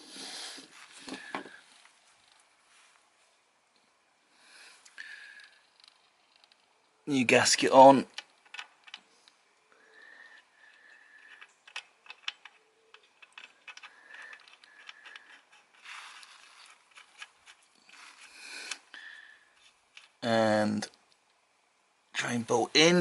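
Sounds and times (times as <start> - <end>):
small metallic clicks: 4.8 - 6.8, 8.1 - 9.4, 10.3 - 20.2.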